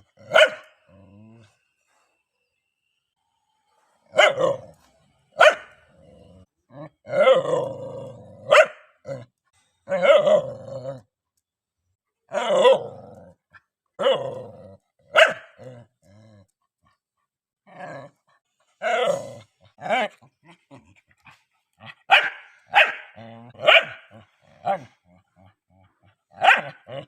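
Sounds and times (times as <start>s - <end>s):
dog barking: 0.2s - 0.8s, 4.1s - 4.7s, 5.4s - 5.8s, 8.4s - 9.0s, 9.9s - 10.3s, 15.1s - 15.7s, 22.0s - 25.0s, 26.3s - 27.0s.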